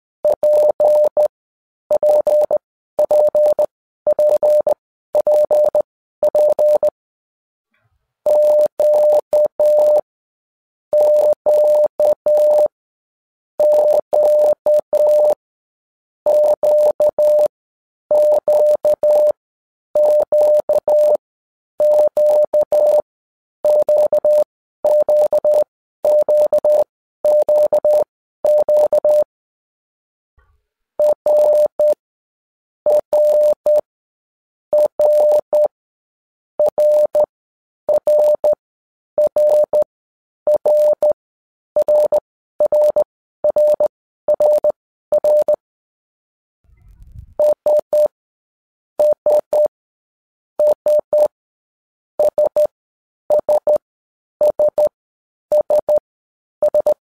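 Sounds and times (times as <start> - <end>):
morse code beeps: 0.2 - 1.3, 1.9 - 7.0, 8.3 - 10.1, 11.0 - 12.8, 13.6 - 15.4, 16.3 - 17.5, 18.1 - 19.4, 20.0 - 21.2, 21.8 - 23.0, 23.6 - 29.3, 31.0 - 32.0, 32.9 - 33.9, 34.7 - 35.7, 36.6 - 37.3, 37.9 - 38.6, 39.2 - 39.9, 40.5 - 41.2, 41.8 - 45.6, 47.0 - 48.1, 49.0 - 49.7, 50.6 - 51.3, 52.2 - 52.7, 53.3 - 53.8, 54.4 - 56.0, 56.6 - 57.0.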